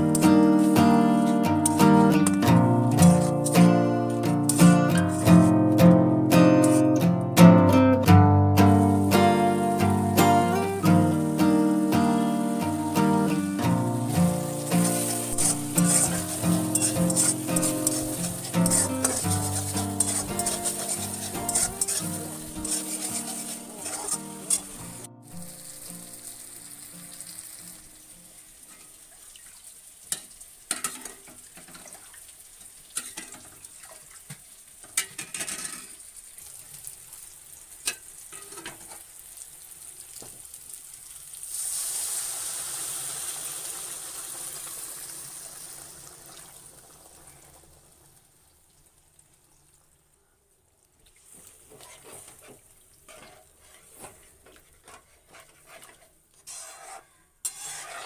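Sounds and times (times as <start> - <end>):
curry sizzling in a pan: 0.0 - 50.1, 50.8 - 58.0
loud hiss: 8.7 - 27.7
spoon stirring and knocking pan: 14.0 - 25.4, 51.7 - 58.0.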